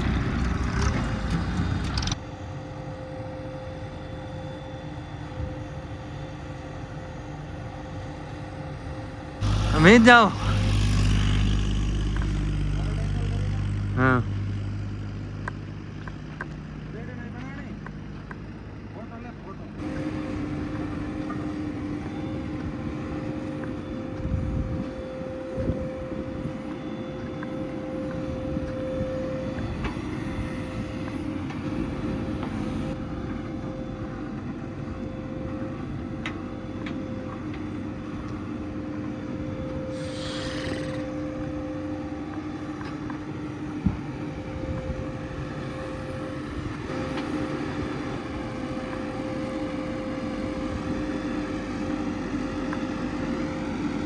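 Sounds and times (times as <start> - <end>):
diesel engine running: 0.0 - 54.0
short hiss: 39.9 - 41.1.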